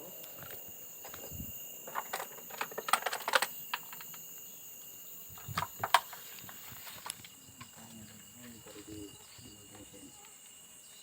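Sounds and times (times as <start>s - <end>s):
sharp clicks and crackles: 1.9s - 4.2s.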